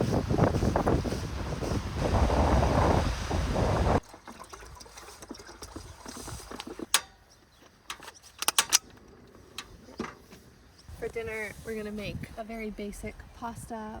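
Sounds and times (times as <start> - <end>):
wind buffeting microphone: 0.0 - 4.0, 10.9 - 14.0
sharp clicks and knocks: 6.6 - 10.2.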